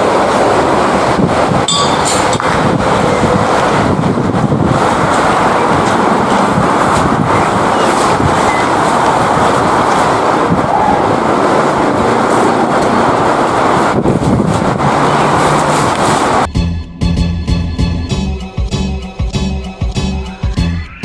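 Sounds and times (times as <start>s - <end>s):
train running noise: 0.0s - 16.5s
wheels clicking over rails: 0.0s - 16.5s.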